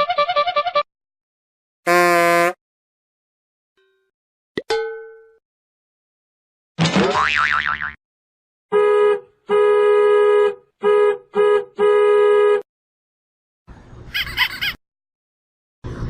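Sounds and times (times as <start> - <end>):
two-note car horn honking: 1.9 - 2.6, 8.7 - 12.7.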